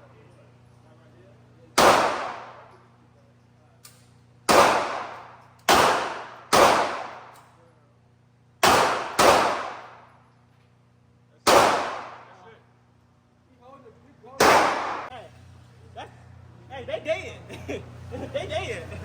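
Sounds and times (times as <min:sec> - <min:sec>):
steady low hum: 0:00.0 - 0:19.0
gunshots with echo: 0:01.8 - 0:02.7, 0:04.5 - 0:07.3, 0:08.6 - 0:10.0, 0:11.5 - 0:12.4, 0:14.4 - 0:15.1.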